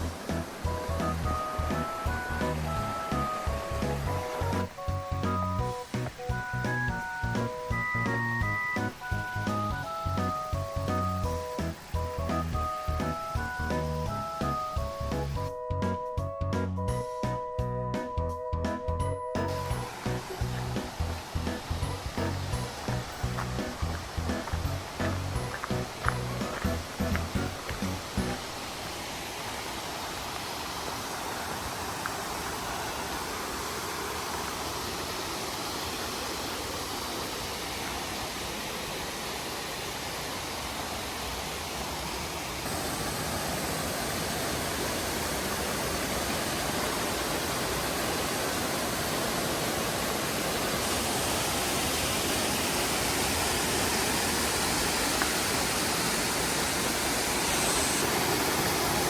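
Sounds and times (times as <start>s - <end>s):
waterfall rushing: 0.0s - 15.5s, 19.4s - 59.0s.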